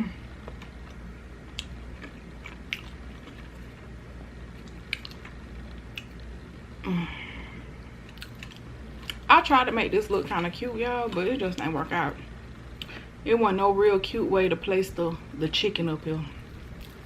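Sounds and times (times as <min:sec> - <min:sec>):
chewing and biting food: 0:00.4 - 0:06.3, 0:08.0 - 0:09.3, 0:16.5 - 0:17.0.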